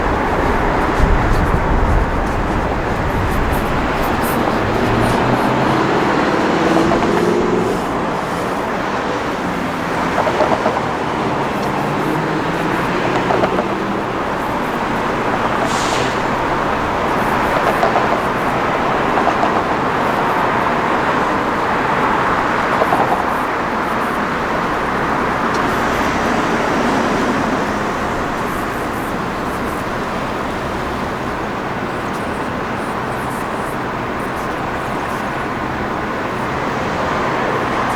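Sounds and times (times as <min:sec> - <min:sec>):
engine rising in pitch: 0:00.0 - 0:22.6
tyres and passing vehicles: 0:00.0 - 0:37.9
brief high hiss: 0:15.6 - 0:17.6.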